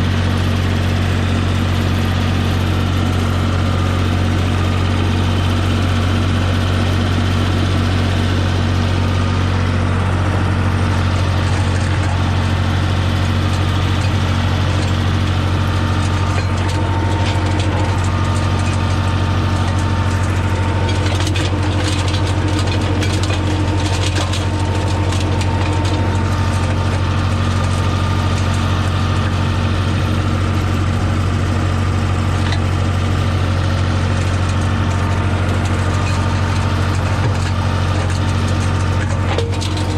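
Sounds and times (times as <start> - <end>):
tractor engine running: 0.0 - 39.9.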